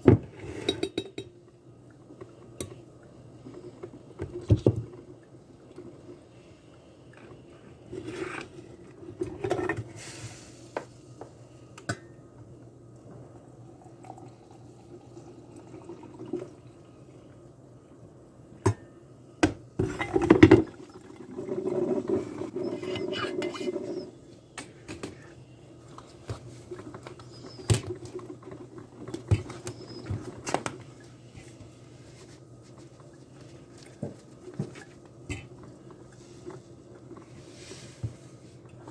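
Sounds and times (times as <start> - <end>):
low appliance hum: 0.0 - 38.9
dishes and cups clinking: 0.6 - 1.4
liquid pouring: 13.6 - 16.9.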